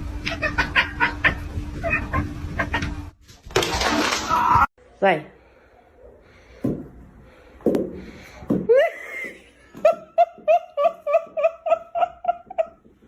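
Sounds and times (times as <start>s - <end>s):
high-pitched laughter: 0.2s - 3.0s.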